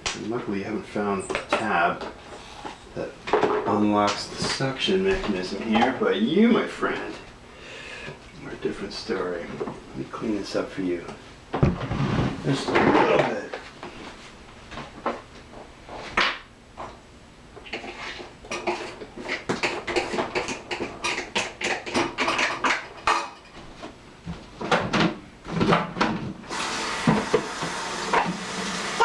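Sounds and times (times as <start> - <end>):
dishes and cutlery clattering: 17.7 - 23.6.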